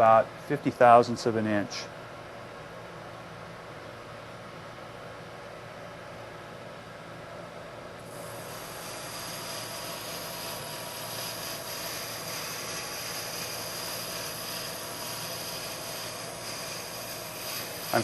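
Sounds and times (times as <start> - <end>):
hiss of cutting tool: 8.0 - 18.0
lathe whining: 8.0 - 18.0.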